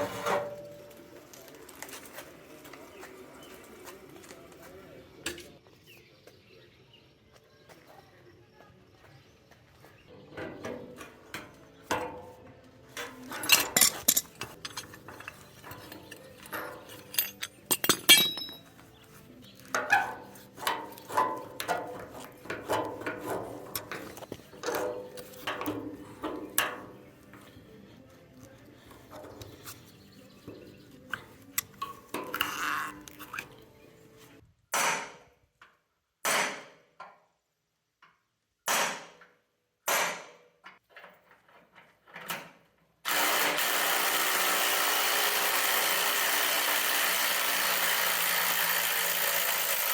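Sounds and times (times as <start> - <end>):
metal clanking: 13.0 - 18.7, 19.7 - 27.0
metal tools clinking and knocking: 13.0 - 18.8, 19.6 - 27.0, 30.6 - 33.7.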